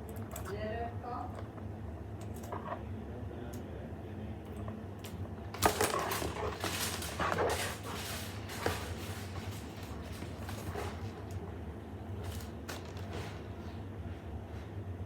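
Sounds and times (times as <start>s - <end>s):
objects clicking: 5.6s - 11.1s
clattering and rustling: 5.6s - 11.4s, 12.2s - 13.6s.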